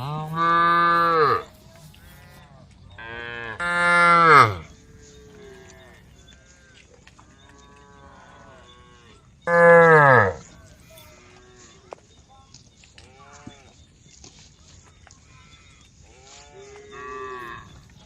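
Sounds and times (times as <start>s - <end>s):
cow mooing loudly: 0.0s - 1.5s, 3.1s - 5.8s, 9.5s - 10.4s
faint moos of cattle: 0.0s - 12.0s, 13.0s - 13.8s, 14.8s - 18.0s.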